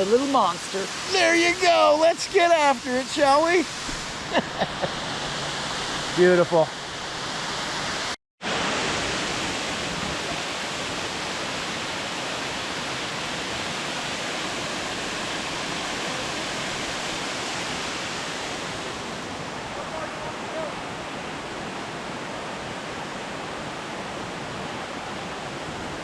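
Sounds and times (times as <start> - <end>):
waterfall roaring: 0.0 - 26.0.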